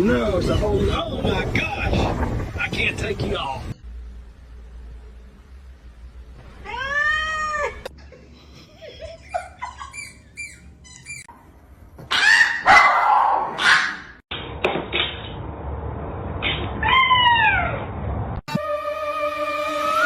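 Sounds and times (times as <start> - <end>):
cat meowing: 6.6 - 7.8
cat chirping calls: 9.8 - 11.3.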